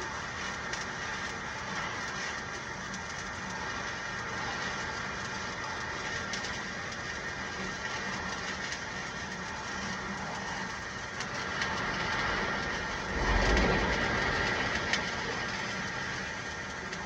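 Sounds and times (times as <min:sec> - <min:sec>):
welding arc crackling: 0:00.0 - 0:17.0
machine hum: 0:11.2 - 0:17.0.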